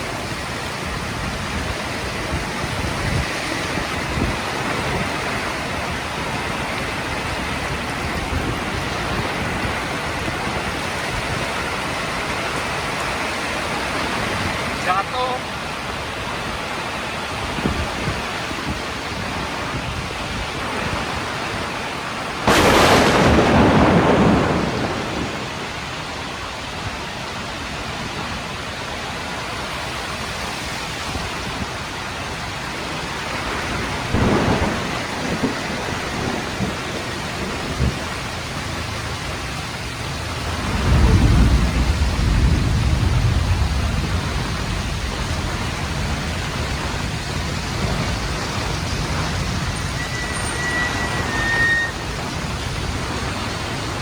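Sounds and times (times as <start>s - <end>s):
heavy rain in windstorm: 0.0s - 54.0s
sudden loud burst: 22.5s - 25.6s.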